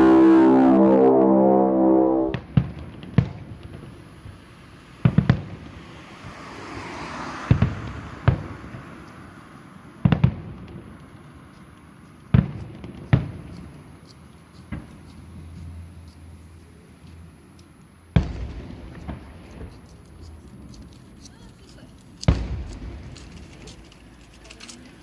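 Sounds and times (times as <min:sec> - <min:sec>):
fireworks booming: 0:22.3 - 0:23.6.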